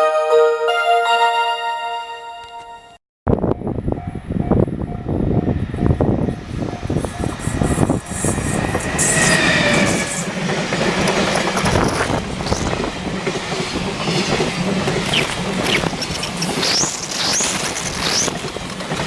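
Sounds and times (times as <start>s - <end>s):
wheels rushing on rail: 3.5s - 19.0s
high wavering wheel squeals: 8.2s - 10.3s
train wheels clacking over rail joints: 17.7s - 19.0s.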